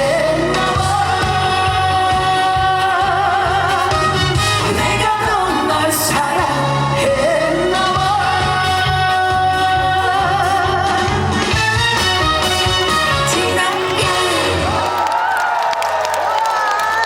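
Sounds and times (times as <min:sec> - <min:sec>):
man singing with vibrato: 0:00.0 - 0:14.9
instrumental accompaniment: 0:09.5 - 0:15.0.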